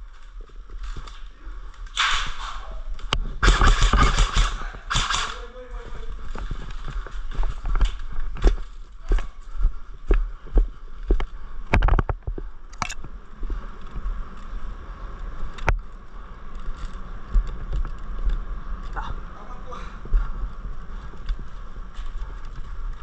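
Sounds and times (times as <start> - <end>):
footsteps and gear thumping: 0.0 - 23.0
sharp clicks: 1.8 - 5.5, 11.7 - 13.0.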